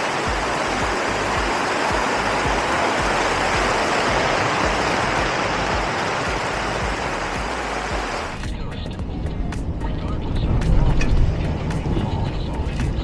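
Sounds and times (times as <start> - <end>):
steady rain hissing: 0.0 - 8.4.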